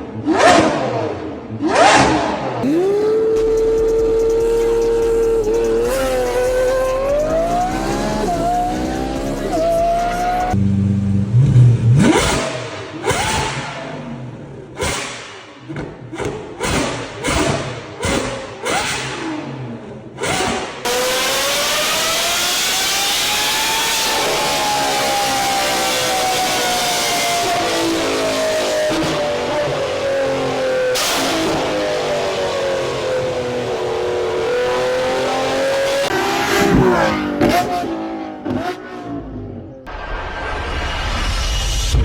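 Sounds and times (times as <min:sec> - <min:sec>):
car engine at full throttle: 0:00.0 - 0:42.0
exhaust cracks: 0:02.6 - 0:20.8.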